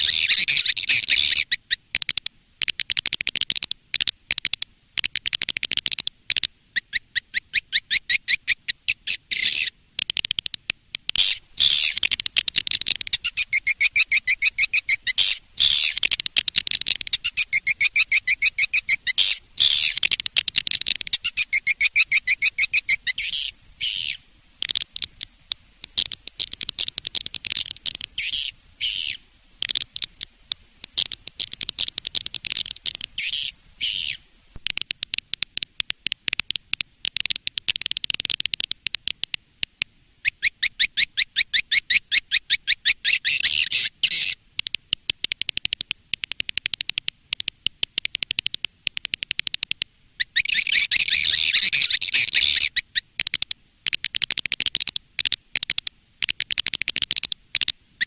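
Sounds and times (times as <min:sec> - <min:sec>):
recorded swiftlet twittering: 0:00.0 - 0:34.8, 0:40.2 - 0:44.4, 0:50.2 - 0:57.7.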